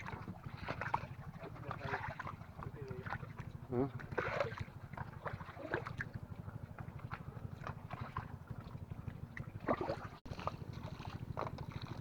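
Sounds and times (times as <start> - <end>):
splashing in water and mud: 0.0 - 12.0
small engine running: 10.2 - 12.0.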